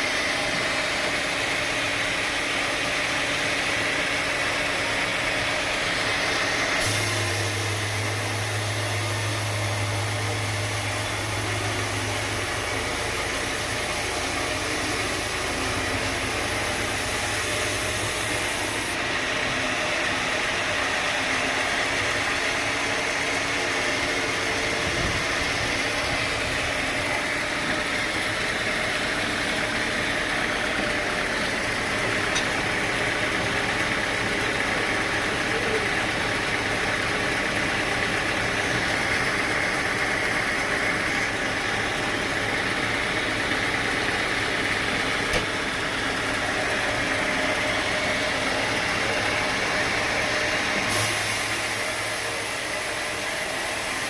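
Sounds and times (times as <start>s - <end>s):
sawmill machinery drone: 0.0s - 54.0s.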